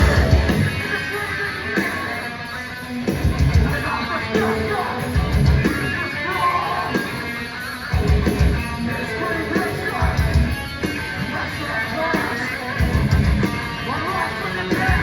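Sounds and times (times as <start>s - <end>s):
heavy bass and drum hits: 0.0s - 0.8s
hardcore band playing: 0.0s - 15.0s
yelled vocals: 0.0s - 15.0s.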